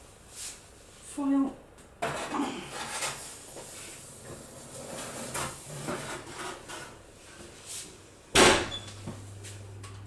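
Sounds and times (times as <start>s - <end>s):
oven door banging shut: 8.4s - 8.9s.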